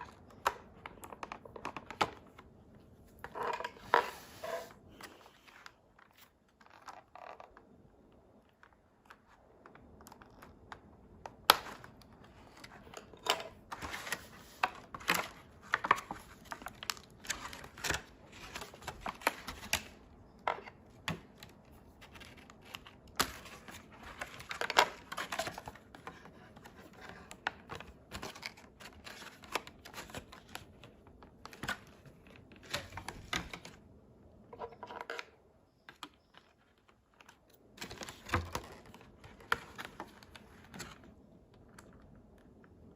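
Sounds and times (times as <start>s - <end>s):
packaging being opened by hand: 11.4s - 33.8s, 35.9s - 42.6s.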